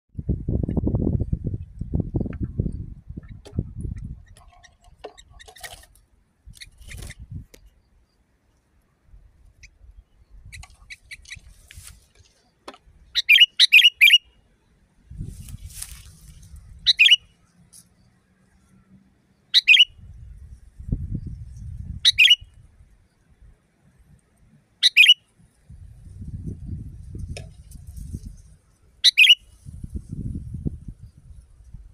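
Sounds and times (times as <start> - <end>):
bird calling: 13.1 - 14.4, 16.8 - 17.4, 19.4 - 20.0, 22.0 - 22.4, 24.8 - 25.3, 29.0 - 29.5.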